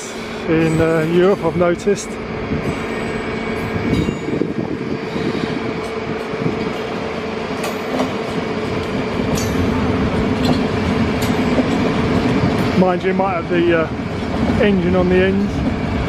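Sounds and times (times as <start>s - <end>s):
wheels rumbling on rail: 0.0s - 16.0s
wheels clicking over rail joints: 7.5s - 12.7s.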